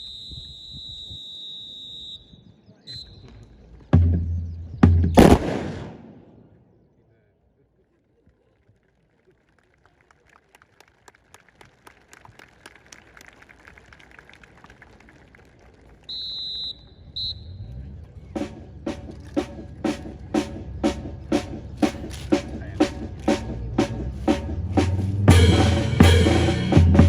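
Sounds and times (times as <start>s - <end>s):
high whistle blast: 0.0s - 3.3s, 16.1s - 17.7s.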